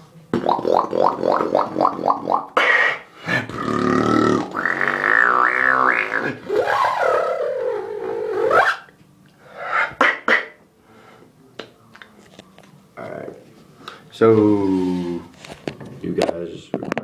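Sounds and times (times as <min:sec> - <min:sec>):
beatboxing mouth sounds: 0:00.3 - 0:08.9, 0:09.6 - 0:10.6.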